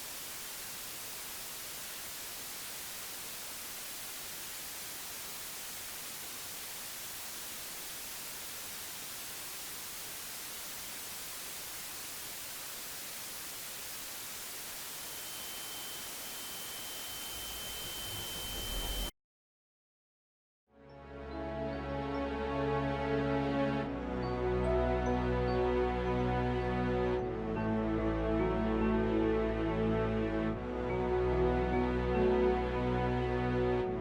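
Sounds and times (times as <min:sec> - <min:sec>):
static hiss: 0:00.0 - 0:19.1
high-pitched steady tone: 0:00.1 - 0:19.1.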